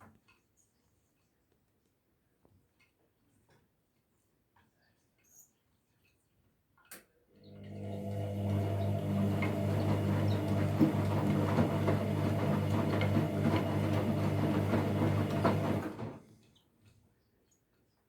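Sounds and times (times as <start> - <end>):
washing machine running: 7.5 - 16.3.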